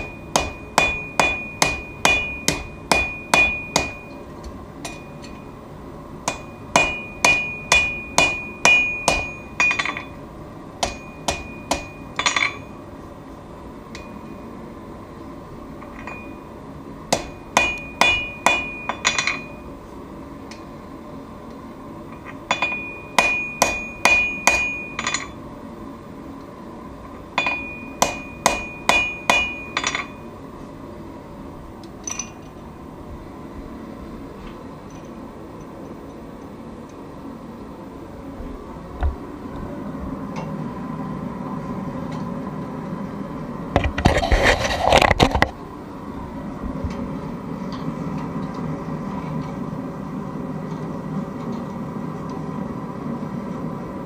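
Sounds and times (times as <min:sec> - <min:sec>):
hammer striking steel on anvil: 0:00.0 - 0:04.2, 0:04.8 - 0:05.5, 0:06.2 - 0:10.2, 0:10.8 - 0:12.8, 0:17.1 - 0:19.6, 0:22.5 - 0:25.4, 0:27.4 - 0:30.3
steady background noise: 0:00.0 - 0:54.0.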